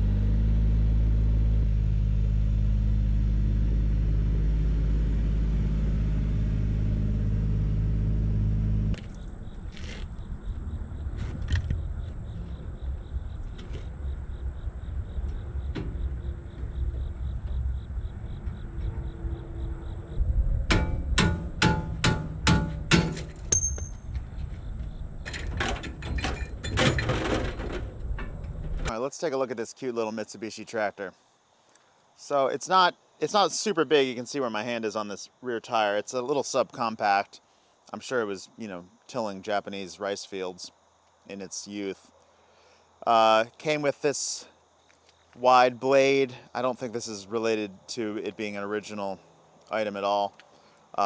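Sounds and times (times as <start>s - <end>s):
engine humming steadily: 0.0s - 29.0s
sharp metallic knocks: 20.6s - 24.2s
clattering: 20.7s - 24.2s, 25.2s - 28.9s.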